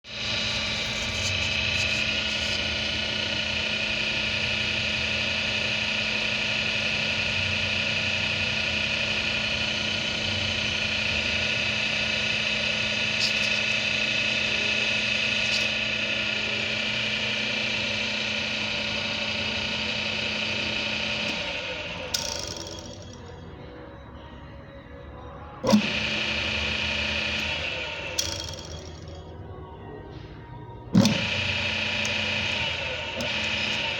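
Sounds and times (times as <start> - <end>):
electric motor whining and humming: 0.0 - 24.3, 24.9 - 29.6, 30.8 - 33.9.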